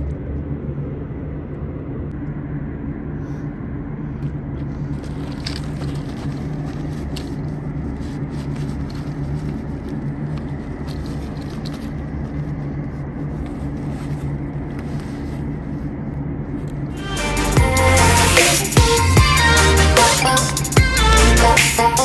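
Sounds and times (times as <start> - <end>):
low mechanical hum: 0.0 - 22.0
faint clicks and rustles: 4.1 - 17.0.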